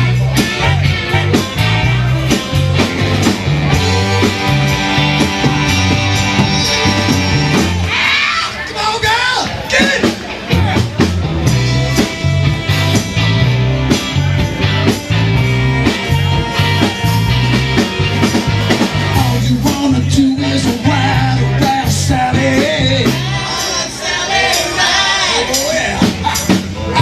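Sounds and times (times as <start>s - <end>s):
pulsing bass beat: 0.0s - 7.8s, 10.6s - 23.4s
bending lead guitar melody: 0.0s - 8.0s, 9.6s - 23.8s
rock and roll band playing: 0.0s - 27.0s.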